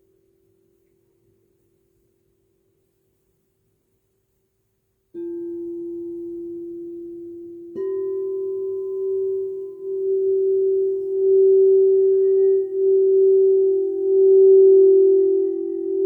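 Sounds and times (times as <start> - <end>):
singing bowls ringing: 5.2 - 16.0.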